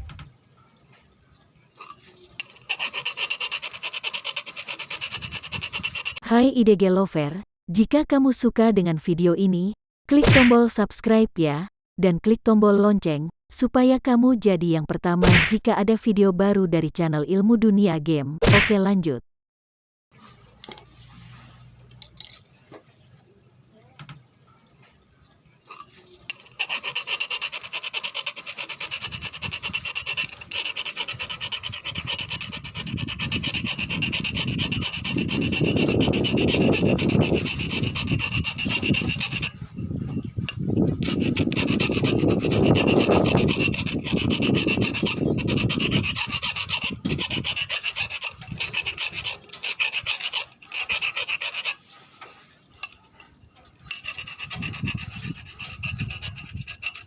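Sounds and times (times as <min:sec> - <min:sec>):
abrasive rasping on metal part: 0:01.7 - 0:06.2, 0:25.6 - 0:57.0.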